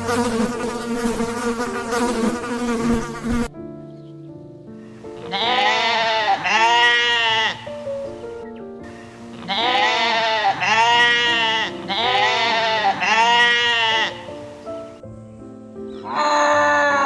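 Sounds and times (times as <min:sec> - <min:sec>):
background music: 0:00.2 - 0:17.0
sheep bleating: 0:05.2 - 0:07.7, 0:09.3 - 0:14.3, 0:16.0 - 0:17.0.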